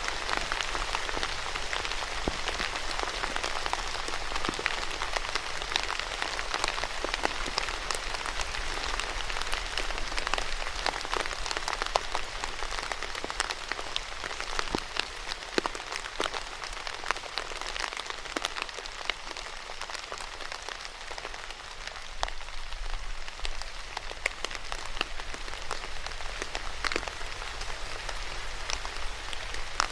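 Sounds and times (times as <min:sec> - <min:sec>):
rain drop hits: 0:00.0 - 0:21.6
steady rain falling: 0:00.0 - 0:29.9.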